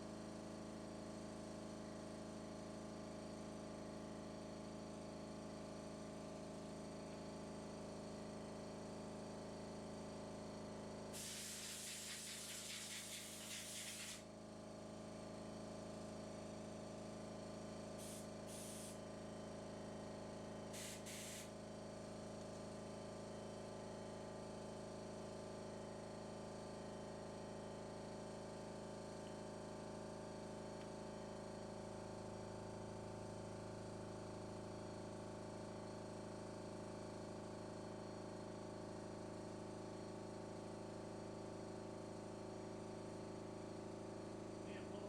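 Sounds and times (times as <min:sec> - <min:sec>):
pressurized spray hissing: 0:11.2 - 0:14.2, 0:18.0 - 0:19.0, 0:20.8 - 0:21.5.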